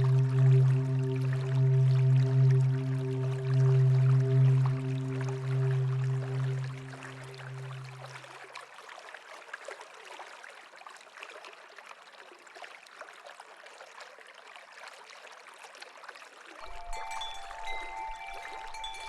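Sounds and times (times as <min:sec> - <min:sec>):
low music note: 0:00.0 - 0:08.3, 0:16.6 - 0:19.0
water trickling: 0:00.0 - 0:13.2, 0:16.6 - 0:19.0.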